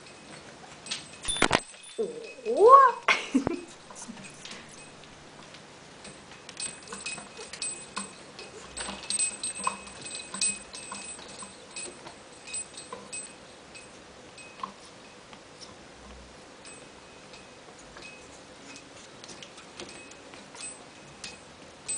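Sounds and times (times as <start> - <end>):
parrot playing clicks and tinkles: 0.0 - 3.1, 3.7 - 15.8.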